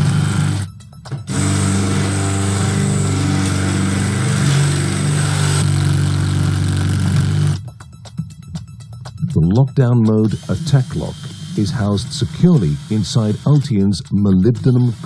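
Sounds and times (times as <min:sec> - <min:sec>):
power drill boring into lock: 0:00.0 - 0:00.7, 0:01.3 - 0:07.6, 0:10.2 - 0:13.8.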